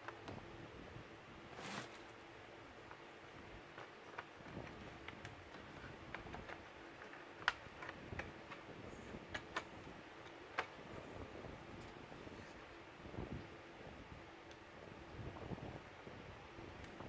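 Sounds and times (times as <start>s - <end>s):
plastic clips clicking and snapping: 3.7s - 8.6s.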